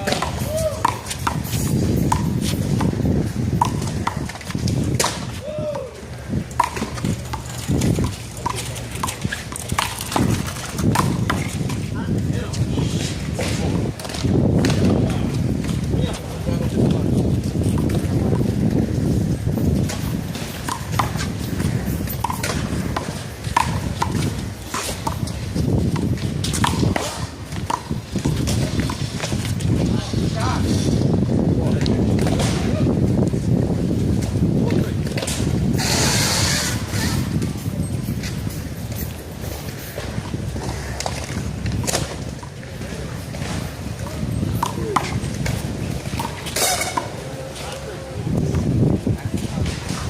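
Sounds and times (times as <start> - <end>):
shoe squeak: 8.5 - 9.6, 35.7 - 41.0, 46.2 - 47.2
rubber ball smacking: 22.1 - 29.4.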